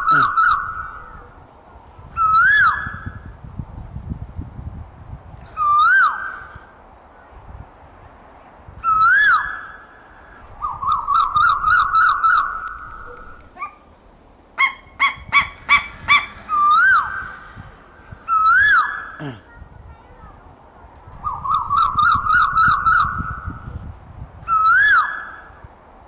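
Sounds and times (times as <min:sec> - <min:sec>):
bird calling with whistled notes: 0:00.0 - 0:01.4, 0:02.2 - 0:03.3, 0:05.4 - 0:06.8, 0:08.8 - 0:13.8, 0:14.6 - 0:19.2, 0:21.2 - 0:25.6.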